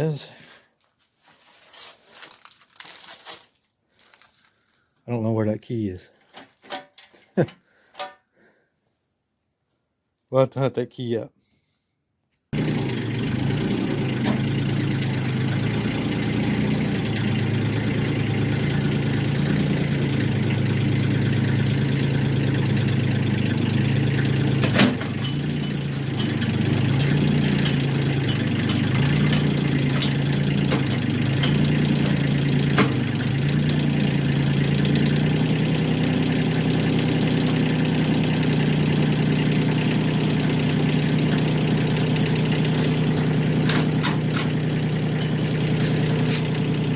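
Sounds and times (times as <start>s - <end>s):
tractor engine idling: 12.6s - 46.9s
sharp metal clank: 24.6s - 35.1s.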